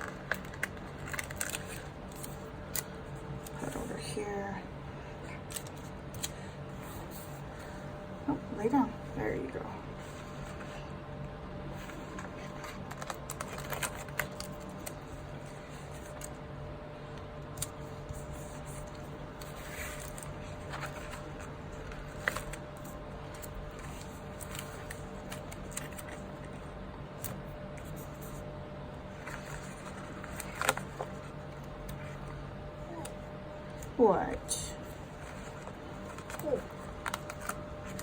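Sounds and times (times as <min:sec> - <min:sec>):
paper pages rustling: 0:00.0 - 0:04.0, 0:10.0 - 0:10.9, 0:11.7 - 0:16.4, 0:17.6 - 0:28.4, 0:29.0 - 0:32.4, 0:34.8 - 0:38.0
steady low hum: 0:00.0 - 0:38.0.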